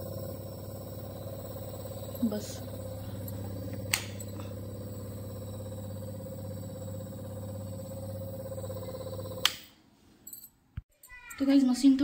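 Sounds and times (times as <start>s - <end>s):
pump motor humming: 0.0s - 9.5s.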